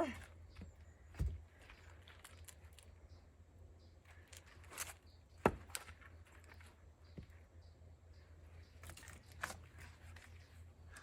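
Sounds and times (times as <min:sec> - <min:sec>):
axe striking log: 0:05.4 - 0:05.9.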